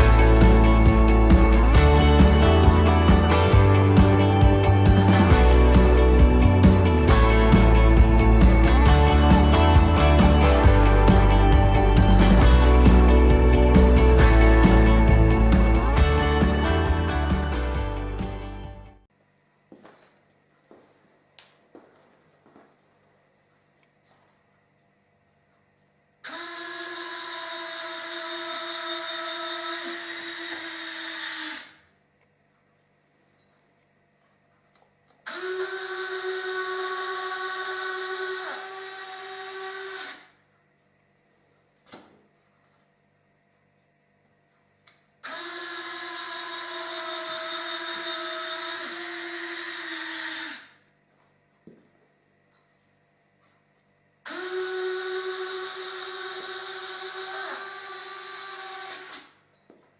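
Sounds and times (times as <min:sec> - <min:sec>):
electric motor whine: 0:00.0 - 0:19.0, 0:26.3 - 0:31.8, 0:35.3 - 0:40.3, 0:45.2 - 0:50.7, 0:54.3 - 0:59.3
motor mechanical whine: 0:00.0 - 0:19.0.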